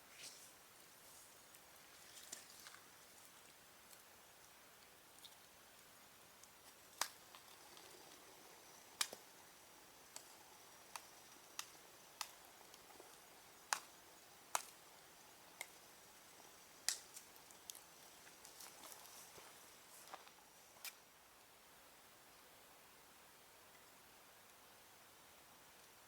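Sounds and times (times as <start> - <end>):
campfire crackling and popping: 4.8 - 19.4.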